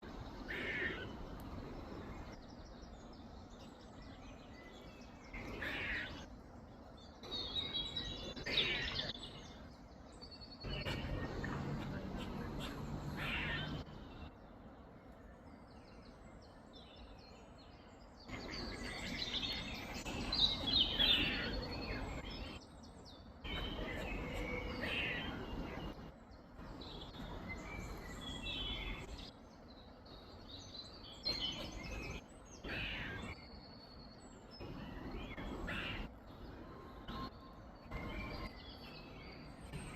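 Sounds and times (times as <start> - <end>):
squirrel miaowing calls: 0.5 - 1.1, 5.4 - 6.2, 12.2 - 13.8.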